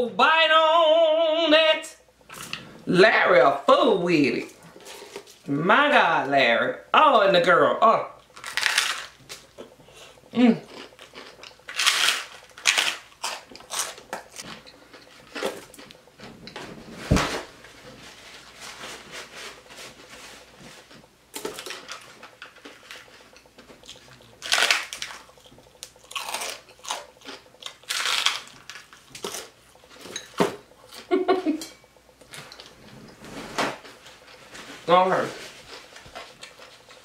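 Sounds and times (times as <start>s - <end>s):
person chewing: 8.2s - 16.6s, 20.8s - 31.1s
crunchy bites: 8.3s - 9.5s, 10.7s - 14.4s, 26.0s - 29.5s.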